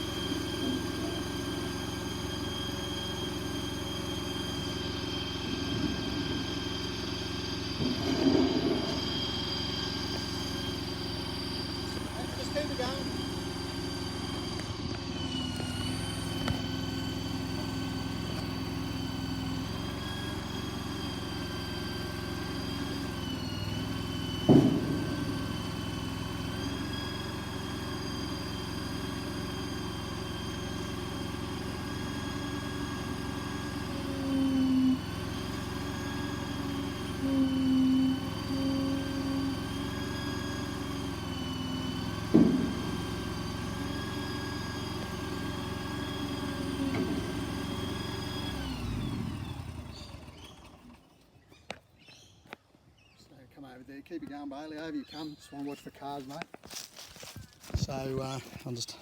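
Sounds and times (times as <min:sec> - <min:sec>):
loader engine running: 0:00.0 - 0:51.3
sharp clunk: 0:24.4 - 0:25.6, 0:42.3 - 0:43.1
low hum: 0:24.4 - 0:27.0.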